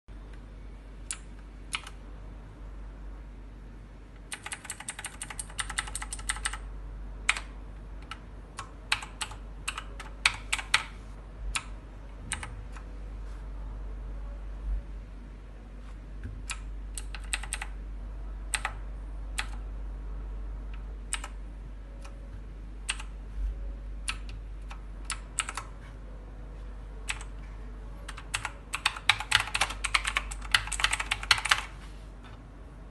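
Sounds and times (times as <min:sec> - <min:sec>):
steady low hum: 0:00.1 - 0:32.9
mechanical keyboard typing: 0:01.1 - 0:02.0, 0:04.3 - 0:12.9, 0:16.4 - 0:17.8, 0:18.5 - 0:19.6, 0:20.7 - 0:21.4, 0:22.9 - 0:23.2, 0:24.0 - 0:25.8, 0:27.0 - 0:27.4, 0:28.1 - 0:31.8.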